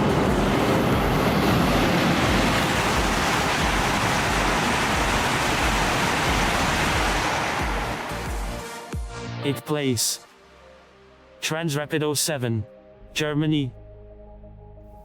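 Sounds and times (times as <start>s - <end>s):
high-speed train rushing: 0.0s - 8.8s
low repeating pulse: 0.0s - 9.2s.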